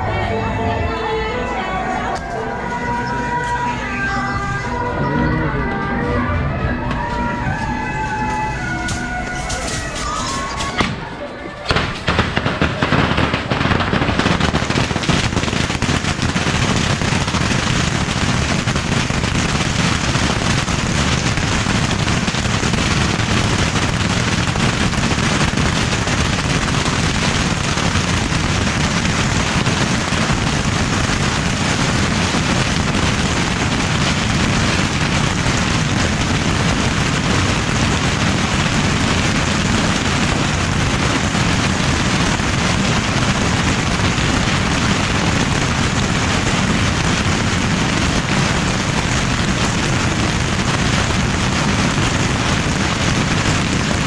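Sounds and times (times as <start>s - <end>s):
rapid crackle of small bangs: 11.6s - 54.0s.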